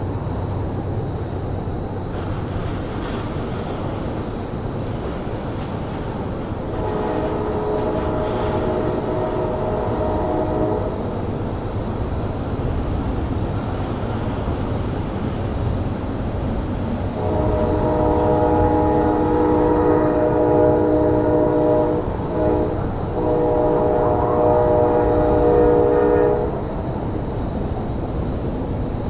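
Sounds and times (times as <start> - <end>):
low rumble of train: 0.0 - 29.0
locomotive air horn blasts: 6.7 - 11.0, 17.2 - 26.6.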